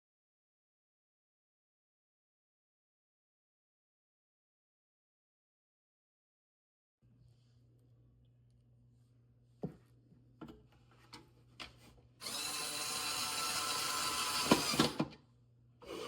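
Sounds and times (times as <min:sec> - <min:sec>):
electric screwdriver motor running: 0:12.2 - 0:15.0.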